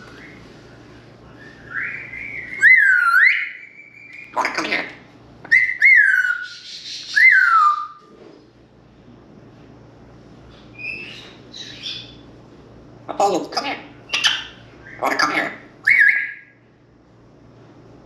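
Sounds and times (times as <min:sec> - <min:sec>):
parrot whistling: 0:01.4 - 0:04.4, 0:05.5 - 0:08.0, 0:14.1 - 0:16.5
parrot chirps: 0:01.7 - 0:08.0, 0:10.6 - 0:12.2, 0:14.1 - 0:16.6
parrot rasping call: 0:01.8 - 0:08.0, 0:14.1 - 0:16.5.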